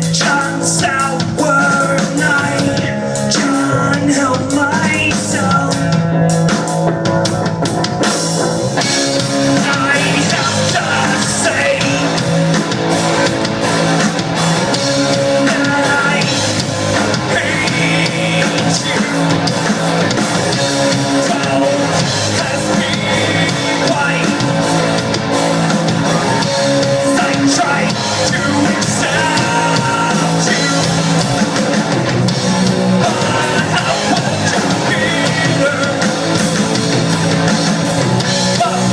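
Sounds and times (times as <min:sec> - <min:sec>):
person singing: 0:00.0 - 0:06.3, 0:08.8 - 0:12.7, 0:14.3 - 0:37.1, 0:38.0 - 0:38.9
drum kit: 0:00.0 - 0:38.9
electric guitar: 0:00.0 - 0:38.9.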